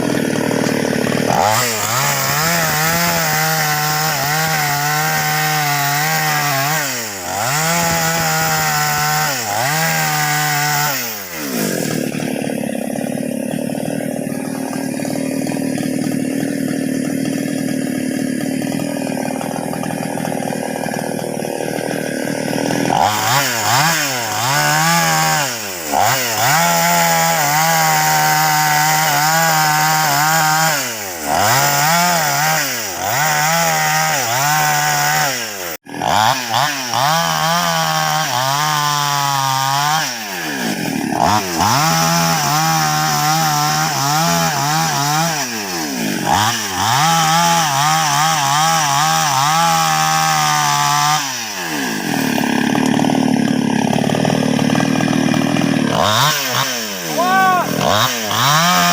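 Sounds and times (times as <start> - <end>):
chainsaw cutting wood: 0.0 - 58.9.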